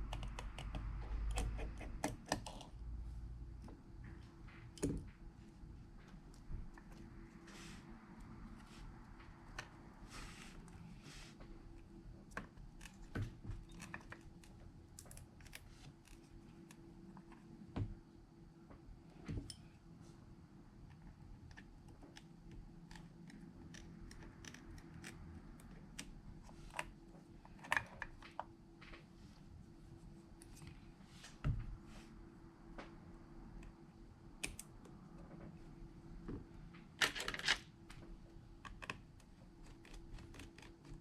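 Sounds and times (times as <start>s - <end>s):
faint steady hum: 0.0s - 41.0s.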